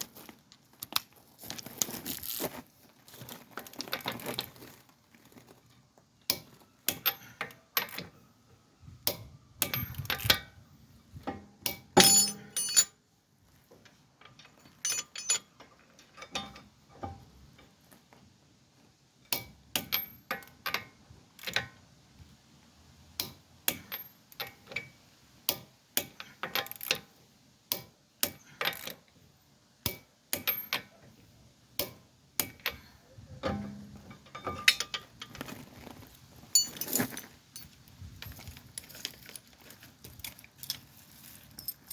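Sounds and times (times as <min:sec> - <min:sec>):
crinkling rustle: 0:00.0 - 0:06.0, 0:35.2 - 0:41.9
metal tools clinking: 0:12.0 - 0:13.0, 0:14.5 - 0:15.5, 0:36.5 - 0:41.9.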